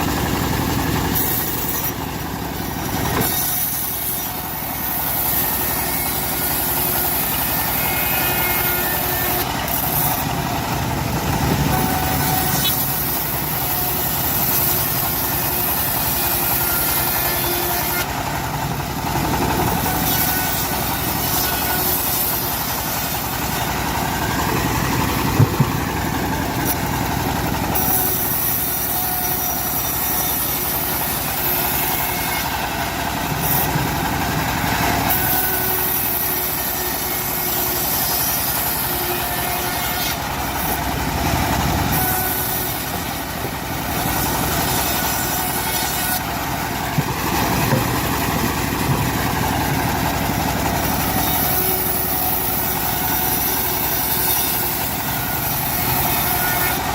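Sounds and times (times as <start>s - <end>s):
bandsaw sawing logs: 0.0s - 56.9s.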